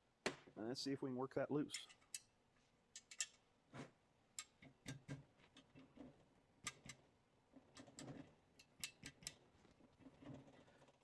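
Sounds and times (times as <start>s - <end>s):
hand tool clicking on bolt: 8.6s - 9.4s.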